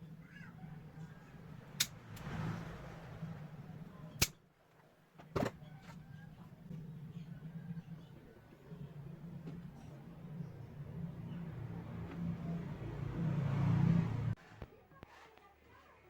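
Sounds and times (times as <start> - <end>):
steady low hum: 5.2 - 14.4.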